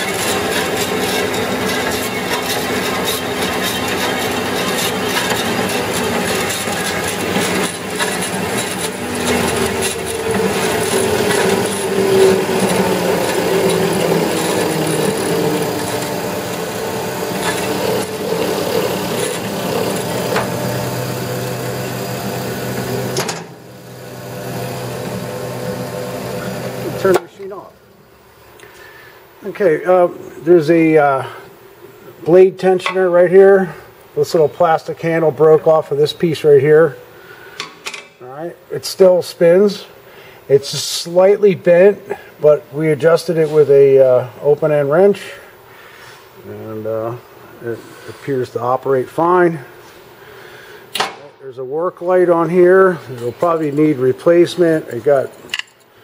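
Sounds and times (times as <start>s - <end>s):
band saw whirring and humming: 0.0s - 27.8s.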